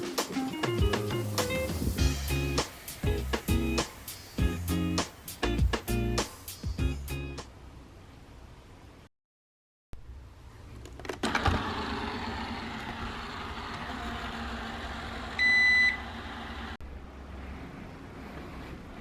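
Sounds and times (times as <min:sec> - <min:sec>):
appliance humming: 0:11.0 - 0:19.0
appliance beep: 0:15.4 - 0:16.2.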